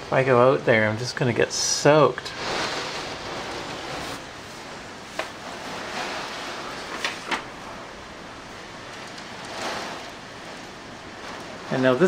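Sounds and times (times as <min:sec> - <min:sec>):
torrential rain on a window: 0:00.0 - 0:12.0.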